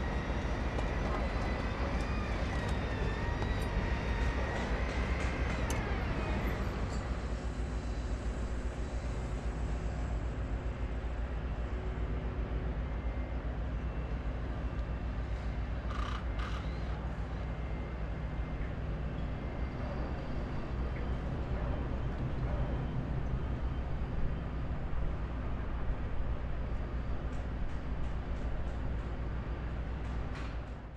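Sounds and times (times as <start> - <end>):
heavy machinery rumbling: 0.0 - 7.9.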